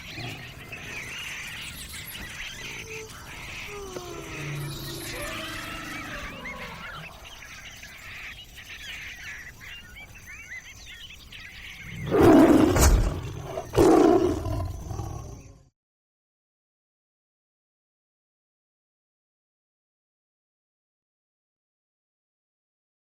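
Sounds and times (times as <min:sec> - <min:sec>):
animal roars: 0:00.0 - 0:07.4, 0:11.8 - 0:15.7
faint chirping bird calls: 0:00.0 - 0:15.7.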